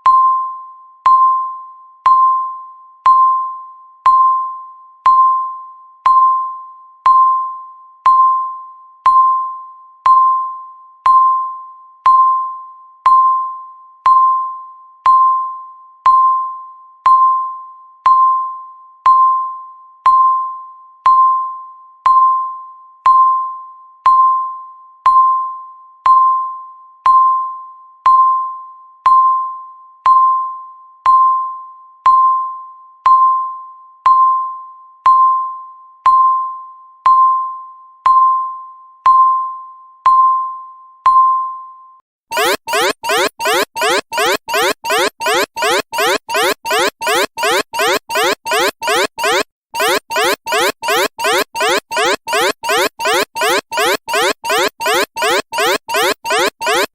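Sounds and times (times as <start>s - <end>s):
electronic timer ticking: 42.3s - 56.9s.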